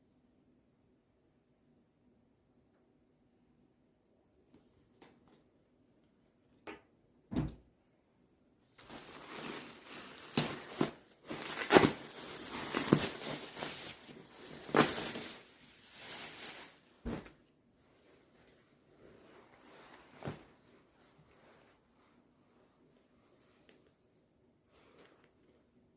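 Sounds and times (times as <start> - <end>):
rustling and handling noise: 8.7 - 25.8.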